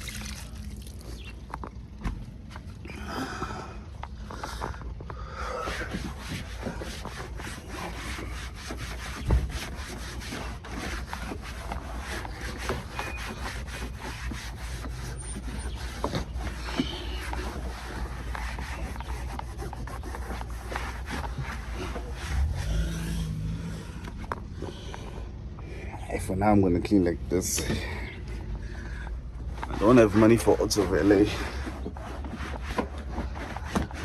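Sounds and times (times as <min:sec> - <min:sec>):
scrubbing strokes rasping: 0:03.6 - 0:25.2, 0:29.4 - 0:34.0
low hum: 0:21.2 - 0:29.8.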